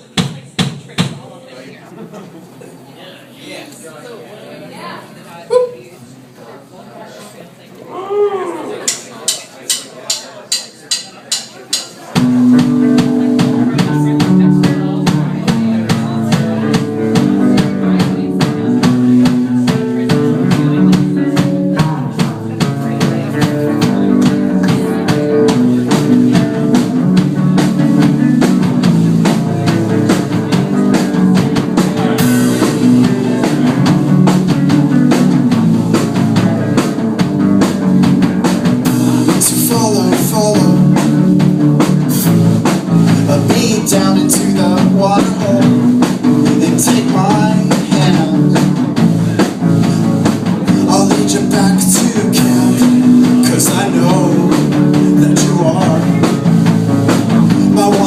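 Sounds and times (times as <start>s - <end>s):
drum kit steady beat: 0.0s - 1.4s, 8.8s - 58.0s
live band playing: 11.7s - 58.0s.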